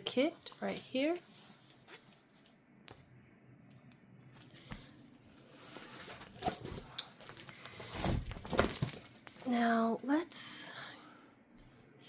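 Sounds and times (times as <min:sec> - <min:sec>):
packaging rustling and clicking: 0:05.6 - 0:09.5.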